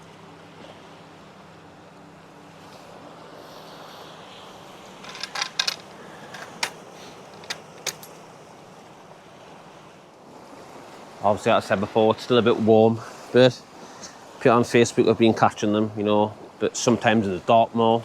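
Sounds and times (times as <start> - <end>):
sea and wind rushing: 0.0 - 18.0
small metal objects clinking: 5.0 - 8.2.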